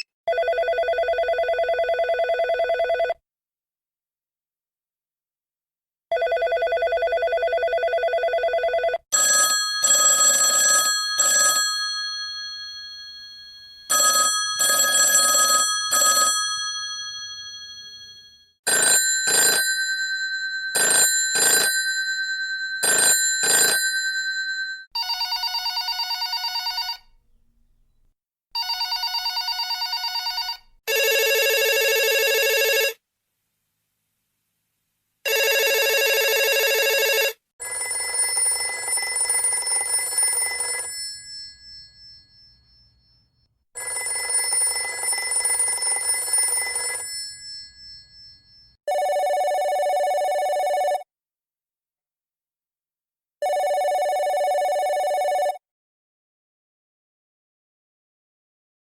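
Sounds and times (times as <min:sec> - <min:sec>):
steady electronic telephone ring: 0:00.0 - 0:03.2, 0:06.1 - 0:27.1, 0:28.6 - 0:33.0, 0:35.3 - 0:51.1, 0:53.4 - 0:55.6
bell-like telephone tones: 0:06.1 - 0:27.0, 0:35.3 - 0:51.1, 0:53.4 - 0:55.6
trilling electronic telephone ring: 0:06.1 - 0:27.0, 0:28.6 - 0:33.0, 0:35.3 - 0:51.1, 0:53.4 - 0:55.6
telephone rings in quick pairs: 0:09.1 - 0:27.0, 0:28.6 - 0:33.0, 0:35.3 - 0:51.0.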